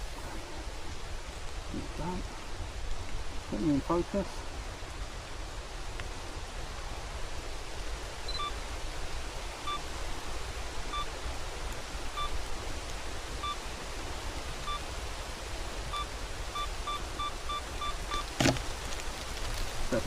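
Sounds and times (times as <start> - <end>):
rain hiss: 0.0 - 20.0
camera timer beeping: 16.0 - 18.6.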